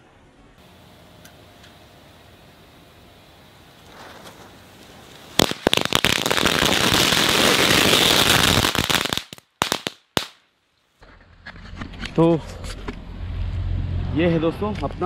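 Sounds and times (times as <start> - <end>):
firecrackers crackling: 0.6 - 10.5.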